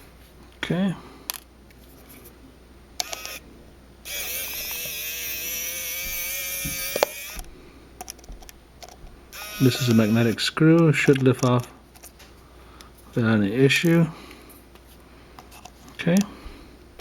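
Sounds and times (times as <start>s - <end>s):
electric screwdriver whining: 3.0s - 3.4s, 4.0s - 7.5s, 9.3s - 10.4s.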